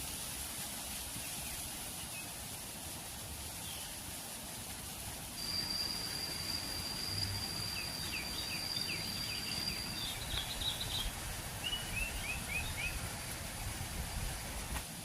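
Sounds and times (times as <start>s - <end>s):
low background noise: 0.0s - 15.0s
bird high whistle: 5.4s - 13.0s
birds chirping: 5.4s - 13.8s.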